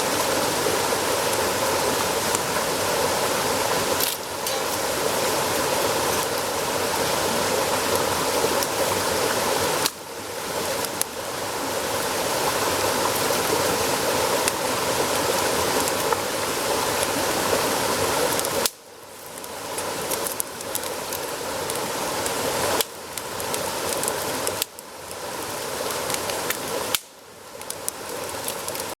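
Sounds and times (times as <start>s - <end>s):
campfire hissing: 0.0s - 29.0s
campfire pops: 3.8s - 6.5s, 9.8s - 10.0s, 10.6s - 11.2s, 18.3s - 25.2s, 25.8s - 28.9s.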